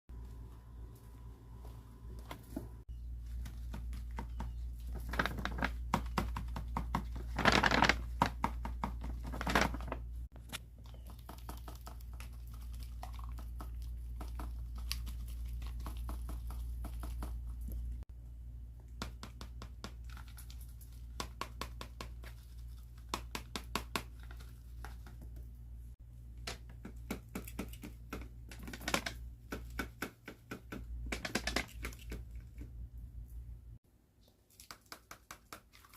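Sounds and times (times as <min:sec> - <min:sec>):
steady low hum: 0:00.1 - 0:03.4
paper crinkling and clicking: 0:04.9 - 0:05.8, 0:07.2 - 0:08.2, 0:09.2 - 0:10.6.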